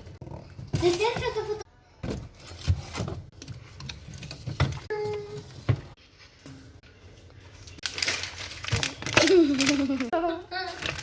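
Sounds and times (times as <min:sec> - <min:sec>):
items knocking and clicking: 0:00.0 - 0:06.0.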